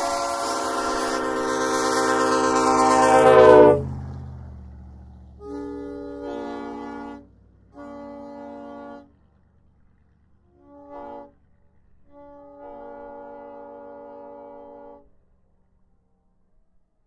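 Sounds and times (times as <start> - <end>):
train air horn blasts: 0.0 - 4.2, 5.4 - 9.3, 10.4 - 15.4.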